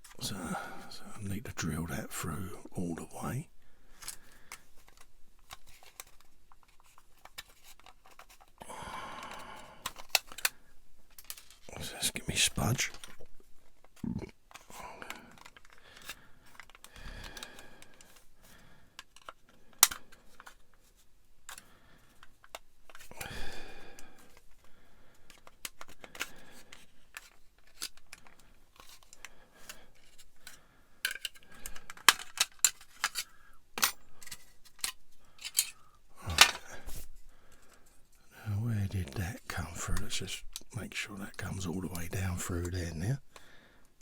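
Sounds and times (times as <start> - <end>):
plastic parts and tools clicking: 4.0 - 8.6, 9.2 - 11.7, 12.9 - 18.4, 19.0 - 23.3, 24.2 - 38.0.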